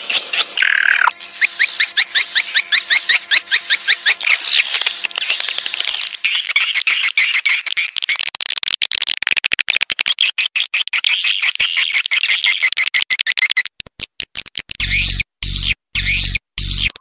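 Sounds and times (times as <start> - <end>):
squeaky chirps: 0.0 - 8.8, 10.0 - 13.7, 14.7 - 17.0
bird chatter of clicks and chirps: 0.0 - 15.1
low buzz: 0.4 - 6.4.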